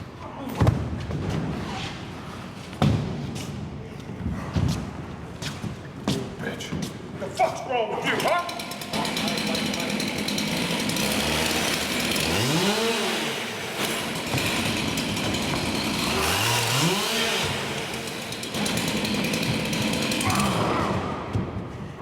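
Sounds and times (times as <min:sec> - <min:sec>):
chainsaw engine revving: 0:08.1 - 0:21.3
rattling mechanical noise: 0:08.5 - 0:21.0.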